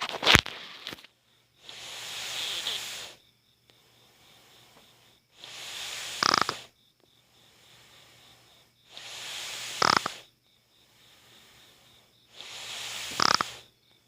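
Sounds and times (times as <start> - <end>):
child snoring: 1.6 - 3.2, 5.3 - 6.7, 8.0 - 10.3, 11.2 - 13.7.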